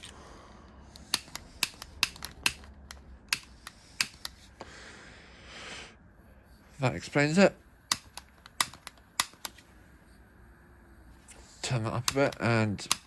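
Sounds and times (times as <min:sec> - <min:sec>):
lighter clicking: 0:01.0 - 0:04.4.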